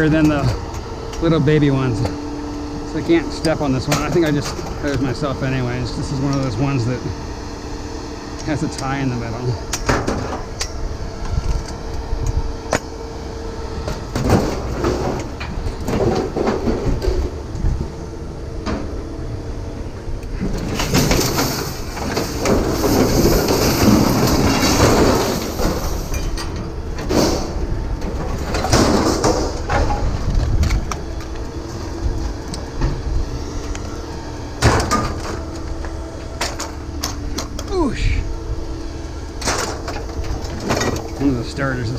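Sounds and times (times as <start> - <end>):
scrap metal clanking: 20.4 - 30.9
metal scraping rattle: 20.4 - 38.2, 39.1 - 41.9
low rumble: 21.8 - 41.9.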